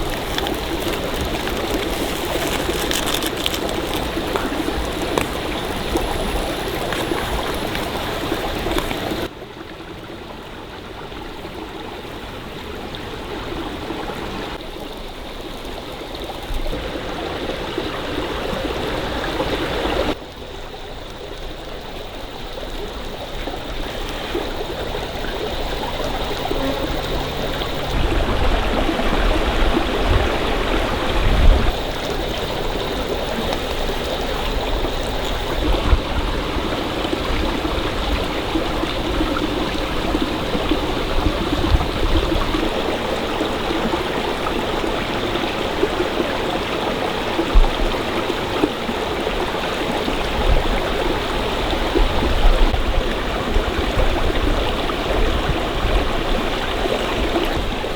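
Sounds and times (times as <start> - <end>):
stream flowing over rocks: 0.0 - 9.9, 23.0 - 57.9.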